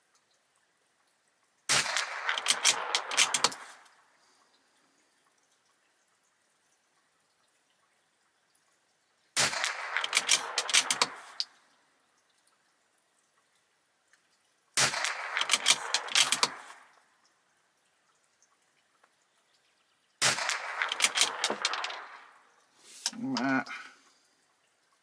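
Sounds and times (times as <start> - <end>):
rifle shots with echo: 1.7 - 3.8, 9.4 - 11.4, 14.8 - 16.8, 20.2 - 22.5.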